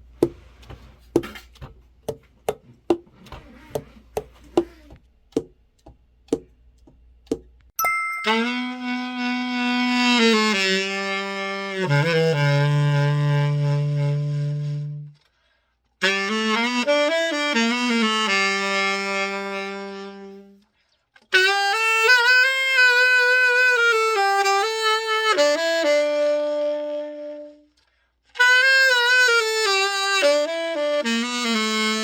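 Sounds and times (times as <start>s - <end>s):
tenor saxophone phrases: 8.3s - 15.2s, 16.0s - 20.6s, 21.3s - 27.7s, 28.4s - 32.0s.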